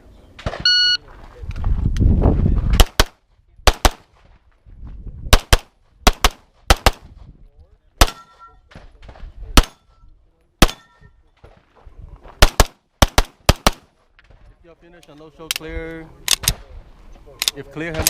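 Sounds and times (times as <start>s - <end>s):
pistol shots: 2.8s - 4.1s, 5.3s - 7.1s, 8.0s - 9.8s, 10.6s - 11.0s, 12.4s - 13.9s
metallic ringing of targets: 8.1s - 8.7s, 9.6s - 11.3s.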